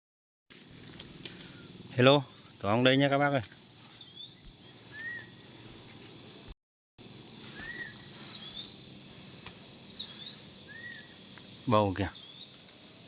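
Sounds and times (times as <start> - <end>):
high-pitched insect trill: 0.5 - 13.0
bird whistling short note: 7.6 - 8.0.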